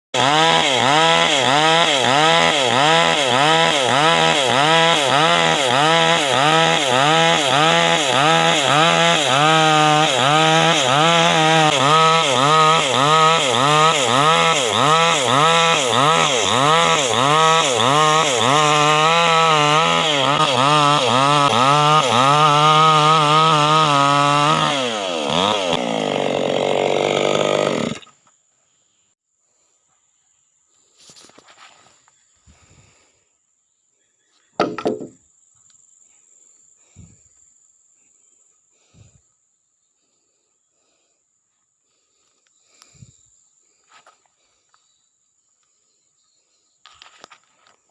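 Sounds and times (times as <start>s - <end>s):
chainsaw cutting wood: 0.2s - 28.5s, 34.5s - 35.2s, 42.2s - 43.1s, 46.8s - 47.9s.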